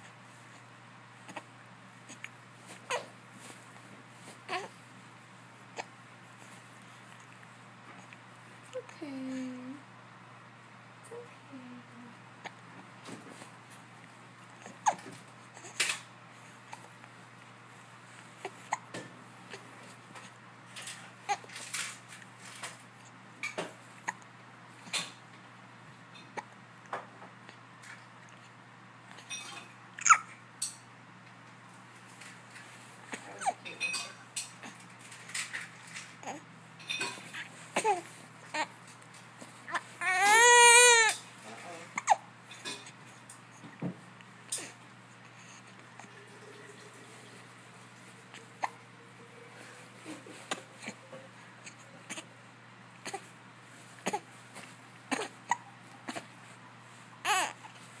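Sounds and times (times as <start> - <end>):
hiccups with voiced squeak: 29.3 - 30.3.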